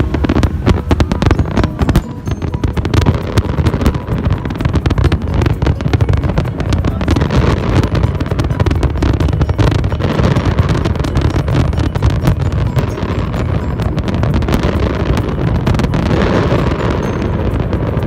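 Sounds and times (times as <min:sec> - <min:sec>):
low rumble: 0:00.0 - 0:11.8
fireworks bangs and crackles: 0:00.0 - 0:18.0.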